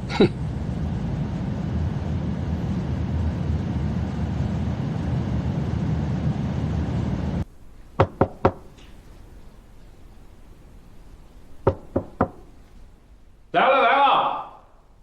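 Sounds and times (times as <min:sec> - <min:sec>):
vehicle rumbling: 0:00.0 - 0:12.8
knocking on a door: 0:08.0 - 0:08.7, 0:11.7 - 0:12.5.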